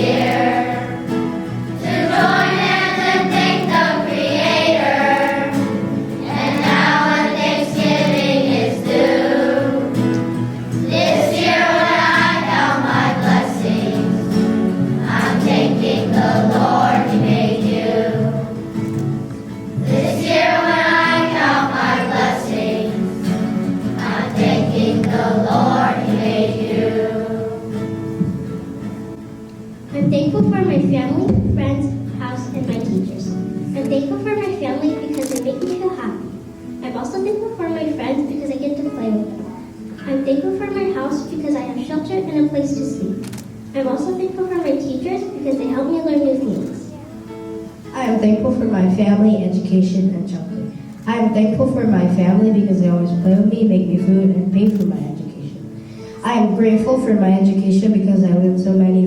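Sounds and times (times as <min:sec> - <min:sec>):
children's choir singing: 0:00.0 - 0:18.8, 0:19.7 - 0:28.9
musical accompaniment: 0:00.0 - 0:44.2, 0:46.7 - 0:49.5.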